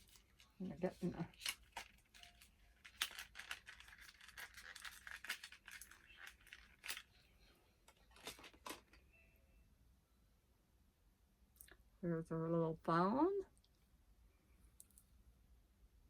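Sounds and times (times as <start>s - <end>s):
packaging crinkling: 0.0s - 7.2s, 8.0s - 9.0s.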